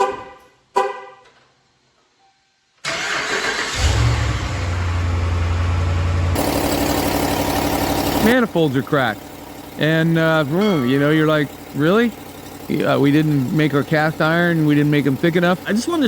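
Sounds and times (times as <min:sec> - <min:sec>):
engine cranking and starting: 0:02.8 - 0:05.0, 0:06.4 - 0:16.0
engine idling: 0:02.9 - 0:16.0.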